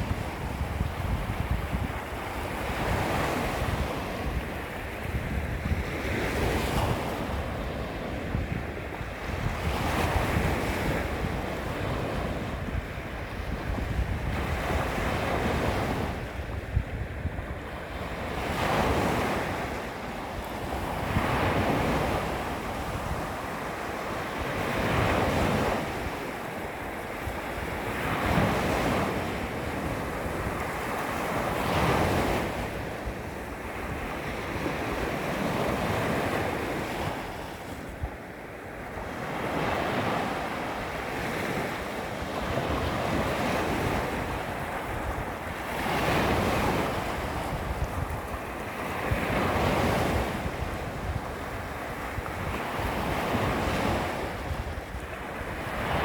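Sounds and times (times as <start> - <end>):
small waves lapping on shore: 0.0 - 56.0
wind rumble on microphone: 0.0 - 56.0.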